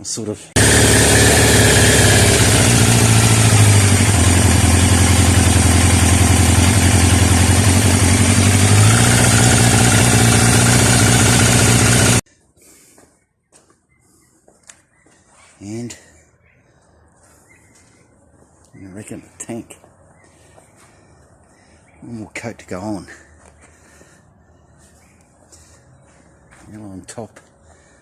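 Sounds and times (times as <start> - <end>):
motorcycle engine running: 0.6 - 12.2.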